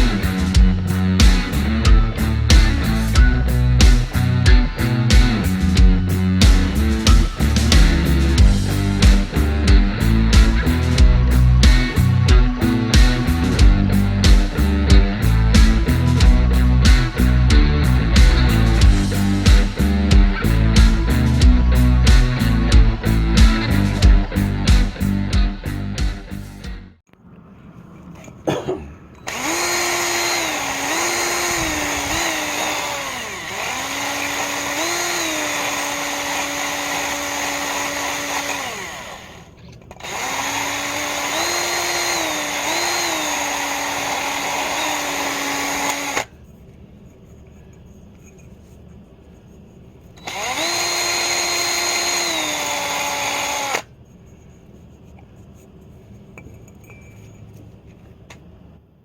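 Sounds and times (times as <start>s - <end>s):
electric power tool motor: 29.3s - 46.3s, 50.2s - 53.9s.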